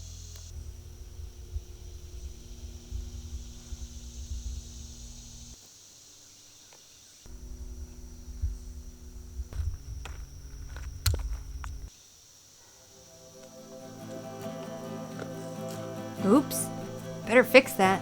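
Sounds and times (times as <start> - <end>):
low rumble: 0.0 - 5.6, 7.3 - 11.9
insects droning: 0.0 - 18.0
sharp snaps or footsteps: 9.5 - 11.9.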